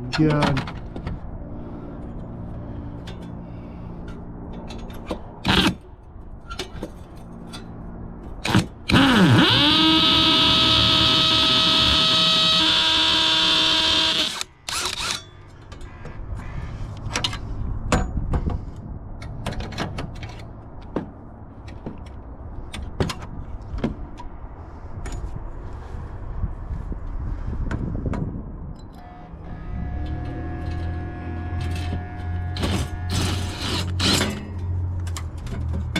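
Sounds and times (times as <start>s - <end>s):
power drill driving a screw: 5.5s - 5.8s, 8.5s - 15.2s, 32.6s - 34.2s.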